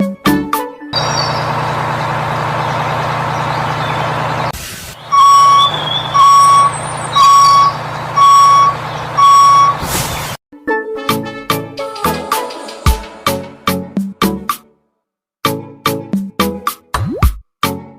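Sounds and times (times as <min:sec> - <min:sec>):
reversing alarm beeping: 0:01.0 - 0:10.3
vehicle engine running: 0:01.0 - 0:10.4.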